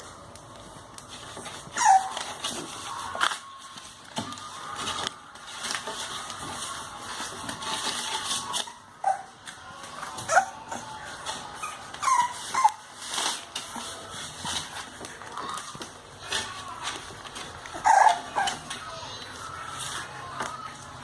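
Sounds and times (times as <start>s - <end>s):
paws scratching and scuffling: 0.0s - 21.0s
puppies whimpering and yelping: 1.3s - 3.4s, 6.7s - 14.9s, 15.5s - 20.3s.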